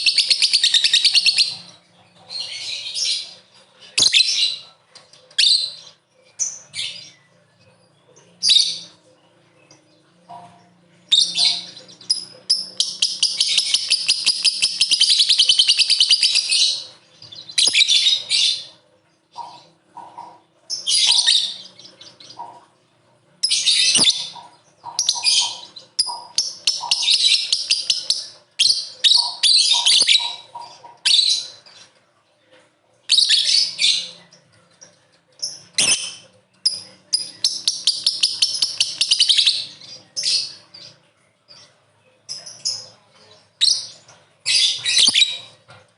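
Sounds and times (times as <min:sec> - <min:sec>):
lovebird chattering: 0:00.0 - 0:04.6, 0:10.3 - 0:22.8, 0:23.4 - 0:31.8, 0:35.4 - 0:41.7.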